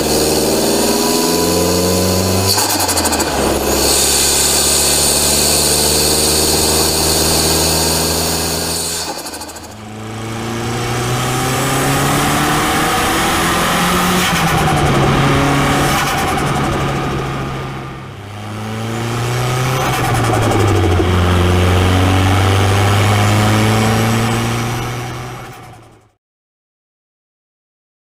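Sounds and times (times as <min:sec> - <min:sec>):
car engine accelerating hard: 0:00.0 - 0:26.2.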